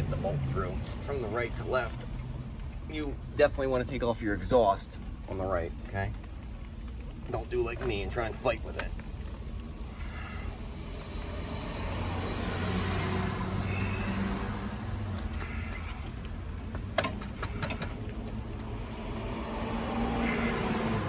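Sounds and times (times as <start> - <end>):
passing car engine hum: 10.8 - 21.0.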